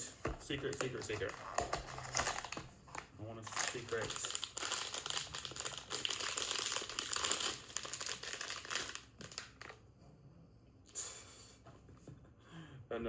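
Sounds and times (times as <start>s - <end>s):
plastic packaging crinkling: 0.6s - 9.8s.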